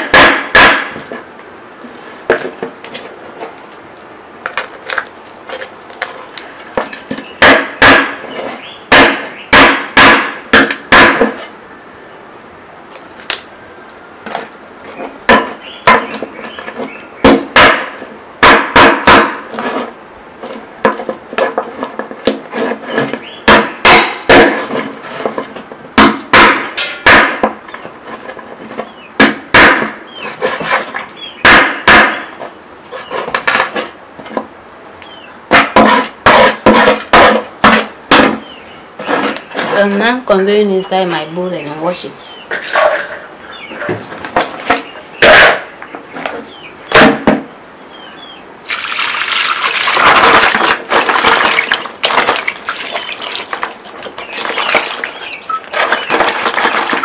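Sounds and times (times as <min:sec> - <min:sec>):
loud hard knocks: 0:00.0 - 0:01.0, 0:07.1 - 0:08.2, 0:08.9 - 0:11.4, 0:15.3 - 0:16.3, 0:17.2 - 0:19.5, 0:23.0 - 0:24.8, 0:26.0 - 0:27.6, 0:29.2 - 0:30.0, 0:31.4 - 0:32.4, 0:35.5 - 0:38.5, 0:46.9 - 0:47.5.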